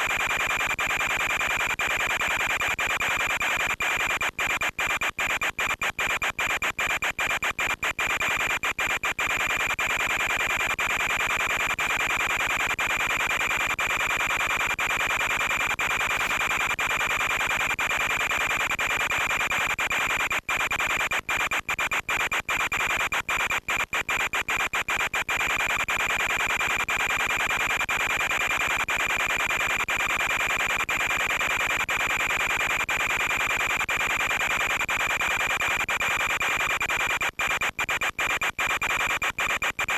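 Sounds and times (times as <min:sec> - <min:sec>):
constant high whine: 0:00.0 - 0:39.9
harsh static hiss: 0:00.1 - 0:21.9.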